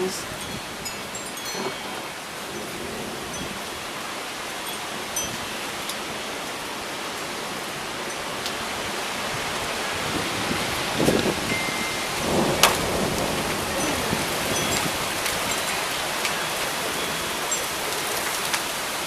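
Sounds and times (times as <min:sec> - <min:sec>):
heavy rain pouring: 0:00.0 - 0:19.0
raindrops ticking on camera: 0:12.0 - 0:19.0.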